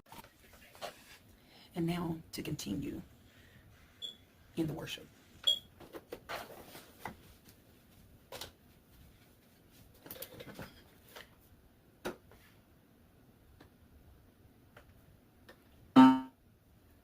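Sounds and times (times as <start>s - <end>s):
rustling of handling: 5.8s - 11.5s.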